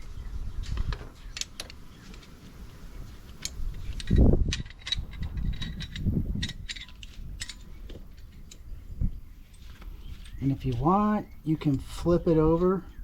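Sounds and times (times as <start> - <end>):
metal tool clicks and clinks: 3.3 - 8.7.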